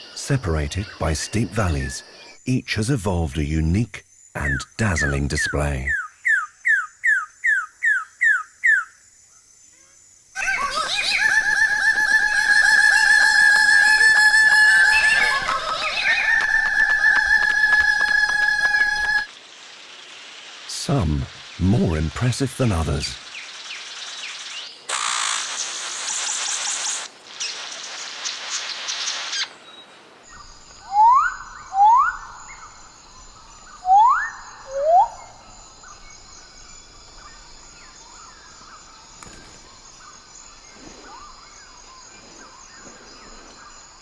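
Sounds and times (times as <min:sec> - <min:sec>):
even hiss: 0:00.0 - 0:06.0, 0:10.2 - 0:44.0
high insect chorus: 0:00.0 - 0:44.0
bird rising whistled calls: 0:10.4 - 0:19.3, 0:30.3 - 0:32.7, 0:33.7 - 0:36.0.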